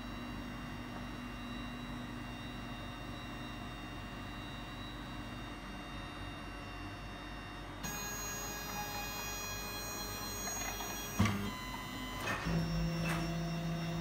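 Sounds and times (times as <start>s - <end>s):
low machine tone: 0.0s - 14.0s
milling machine motor hum: 4.6s - 14.0s
high whine: 7.8s - 14.0s.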